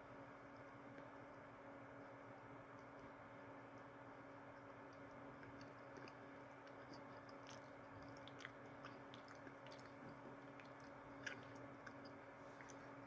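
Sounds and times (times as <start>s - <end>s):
faint steady hum: 0.0s - 13.0s
chewing with wet mouth clicks: 4.6s - 13.0s.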